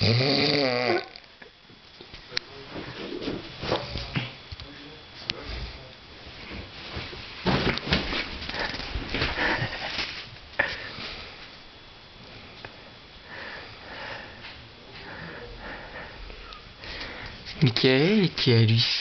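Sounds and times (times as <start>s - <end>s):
man snoring: 0.0s - 1.1s.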